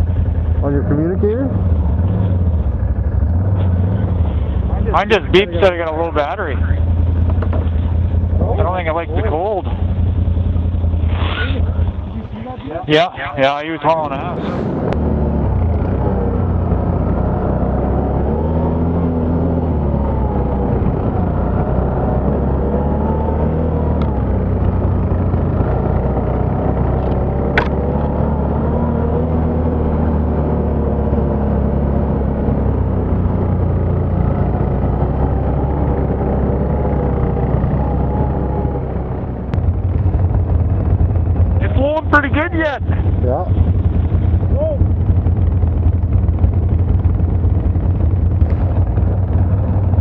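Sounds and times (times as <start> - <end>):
quad bike engine revving: 0.0 - 50.0
sharp click: 27.0 - 28.1.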